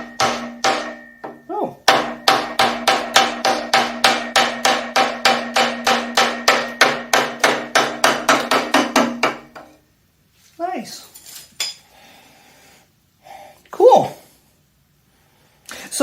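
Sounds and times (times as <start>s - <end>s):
hammer blows on metal: 0.0s - 9.6s.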